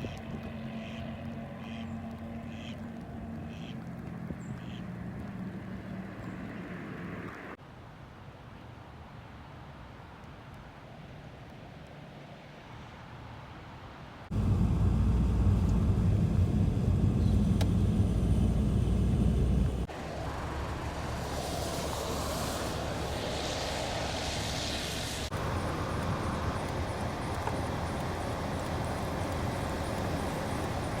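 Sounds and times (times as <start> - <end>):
heavy low traffic rumble: 0.0 - 7.6, 14.3 - 31.0
steady hiss of traffic: 0.0 - 31.0.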